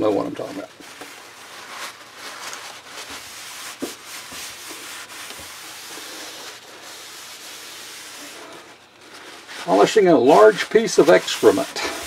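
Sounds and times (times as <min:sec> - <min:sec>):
abrasive scraping cast iron: 0:09.4 - 0:12.0.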